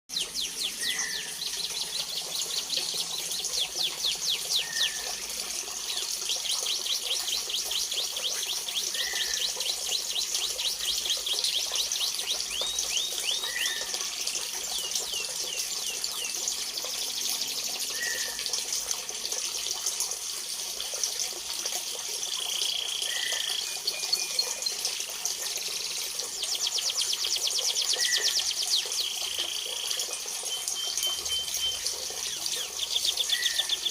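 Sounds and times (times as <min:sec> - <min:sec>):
high bird trills: 0:00.1 - 0:05.2, 0:05.8 - 0:14.0.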